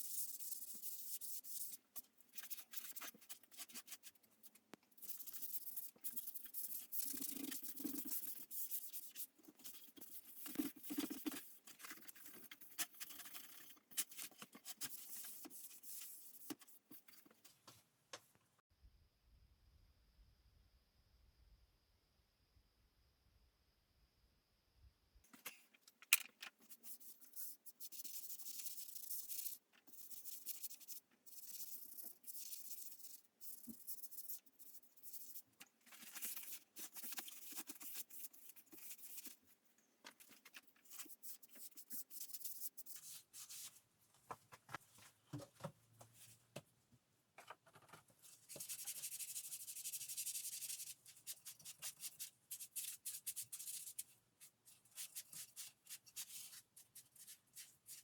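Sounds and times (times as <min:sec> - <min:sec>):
scratchy rubbing on a surface: 0:00.0 - 0:04.2, 0:05.0 - 0:17.2, 0:26.7 - 0:39.4.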